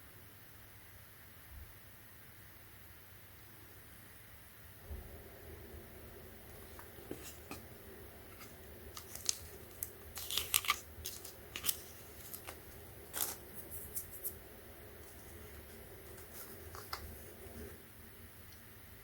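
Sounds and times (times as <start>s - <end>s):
packaging clicks and crinkles: 6.4s - 17.8s.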